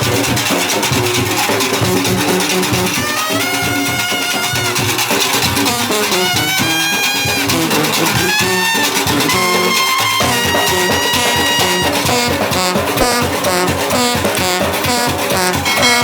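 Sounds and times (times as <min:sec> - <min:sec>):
upbeat instrumental music: 0:05.6 - 0:16.0.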